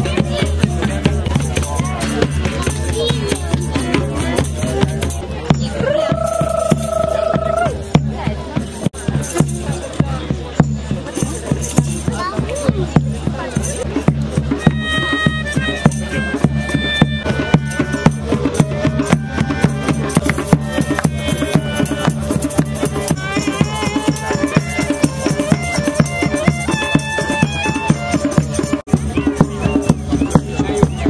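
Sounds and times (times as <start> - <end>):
music with steady beat: 0.0 - 31.0.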